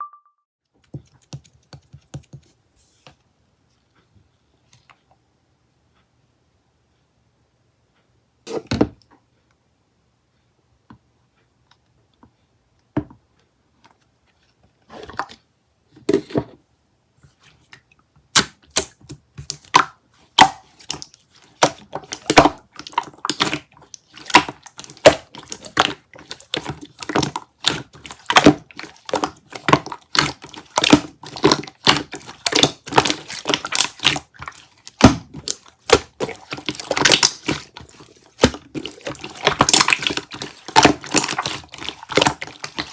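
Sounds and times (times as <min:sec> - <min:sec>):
slime squished by hand: 0:18.4 - 0:42.9.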